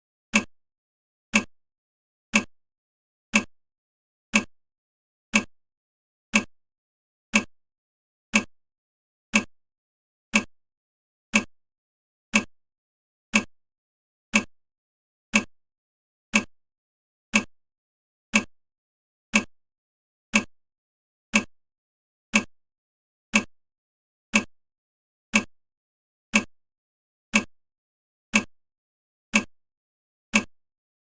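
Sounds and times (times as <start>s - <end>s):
countdown timer ticking: 0.3s - 0.5s, 2.3s - 2.5s, 4.3s - 4.5s, 5.3s - 5.5s, 6.3s - 6.5s, 7.3s - 7.5s, 8.3s - 8.5s, 9.3s - 9.5s, 10.3s - 10.5s, 11.3s - 11.5s, 12.3s - 12.5s, 13.3s - 13.5s, 14.3s - 14.5s, 15.3s - 15.5s, 16.3s - 16.5s, 17.3s - 17.5s, 18.3s - 18.5s, 19.3s - 19.5s, 20.3s - 20.5s, 21.3s - 21.5s, 22.3s - 22.5s, 23.3s - 23.5s, 24.3s - 24.5s, 26.3s - 26.5s, 27.3s - 27.5s, 28.3s - 28.5s, 30.3s - 30.5s.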